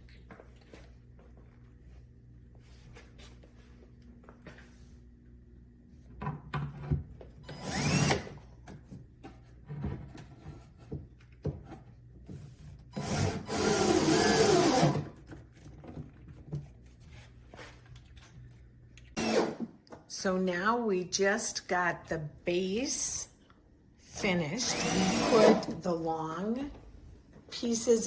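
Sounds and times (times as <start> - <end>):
cordless drill driving screws: 7.5 - 8.4, 13.0 - 15.1, 19.2 - 19.7, 24.6 - 25.8.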